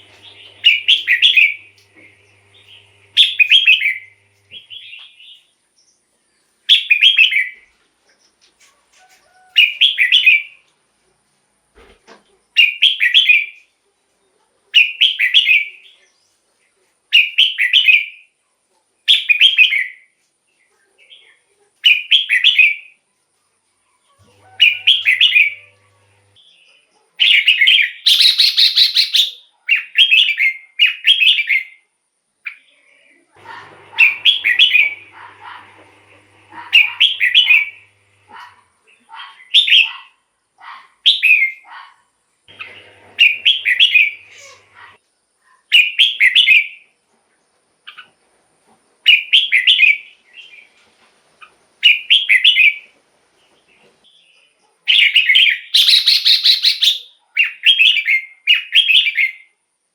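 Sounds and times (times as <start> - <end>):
bird singing: 0.0 - 5.5, 24.3 - 26.6, 33.4 - 40.0, 42.5 - 44.9, 55.0 - 59.4.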